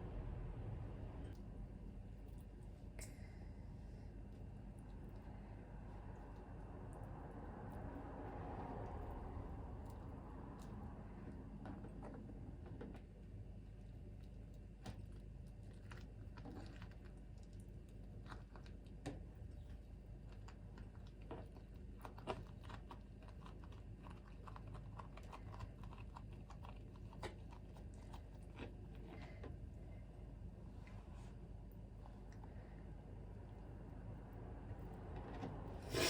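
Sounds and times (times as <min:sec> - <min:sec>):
steady low hum: 0:00.0 - 0:16.3.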